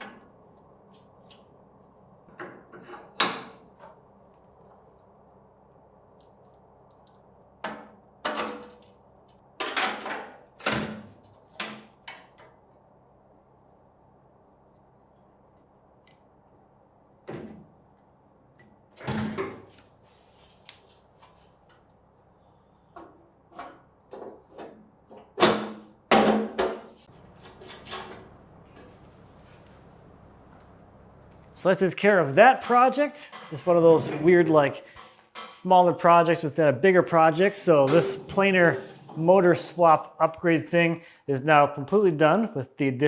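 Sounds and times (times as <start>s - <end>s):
hard parts knocking and clanking: 27.1s - 31.6s.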